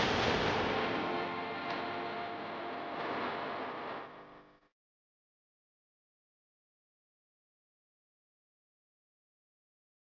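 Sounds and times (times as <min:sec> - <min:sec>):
background music: 0:00.0 - 0:03.2.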